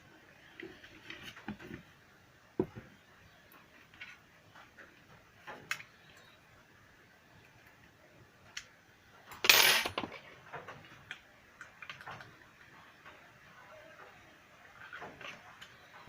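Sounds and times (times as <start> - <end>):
tools clattering: 9.4 - 10.2.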